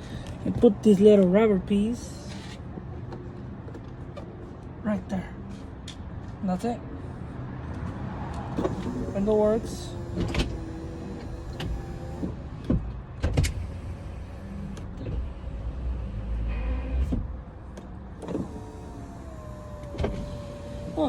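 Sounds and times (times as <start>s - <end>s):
power window motor running: 8.4s - 21.0s.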